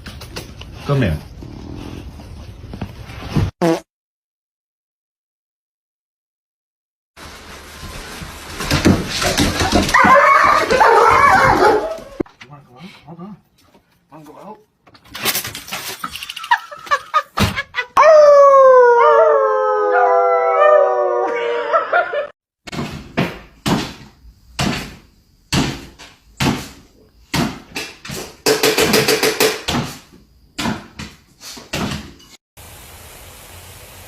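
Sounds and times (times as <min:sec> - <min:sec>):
dog howling: 0:09.9 - 0:12.2, 0:18.0 - 0:22.3.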